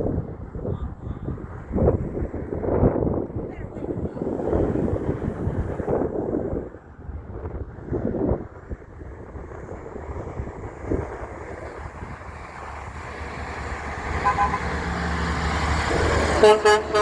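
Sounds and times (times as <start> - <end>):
truck rumbling: 0.0 - 17.0
truck horn blasts: 14.1 - 15.1, 16.2 - 17.0.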